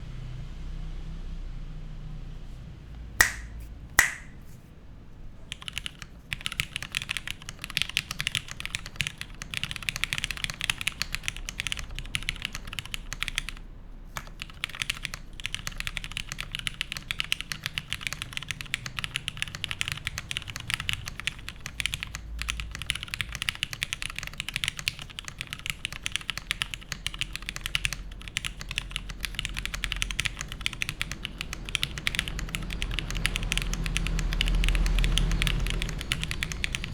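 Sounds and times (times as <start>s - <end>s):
loud sharp clicks: 3.2s - 4.4s
mechanical keyboard typing: 5.5s - 36.9s.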